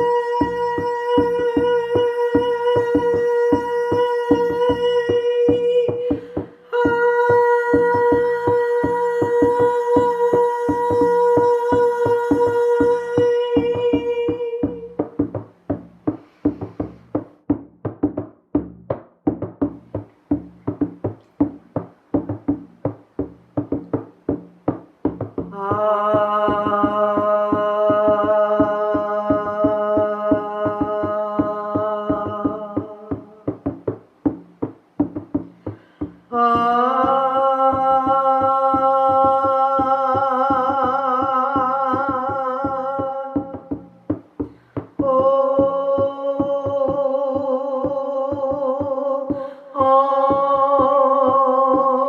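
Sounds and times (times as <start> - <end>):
voice singing long held notes: 0.0 - 15.4, 25.4 - 33.5, 35.6 - 52.0
drum beaten in steady rhythm: 0.0 - 52.0.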